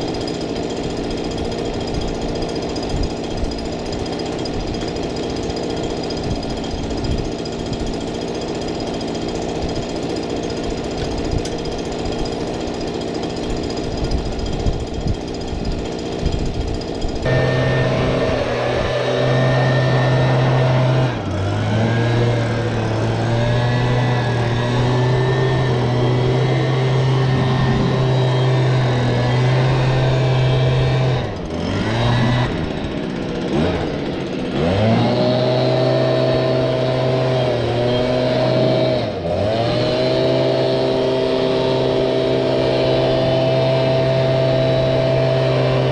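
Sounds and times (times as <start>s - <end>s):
engine rattling clatter: 0.0s - 45.9s
steady engine note: 0.0s - 45.9s.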